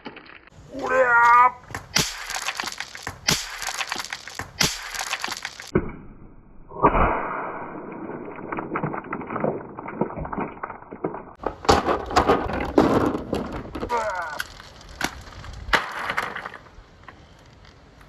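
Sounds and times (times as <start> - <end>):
marbles rolling and clattering: 0.0 - 0.7, 1.7 - 5.8, 7.8 - 16.8.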